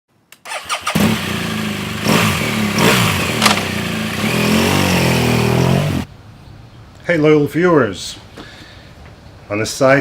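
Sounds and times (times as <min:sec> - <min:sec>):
motorcycle engine revving: 0:00.5 - 0:06.1
sharp click: 0:03.4 - 0:03.7.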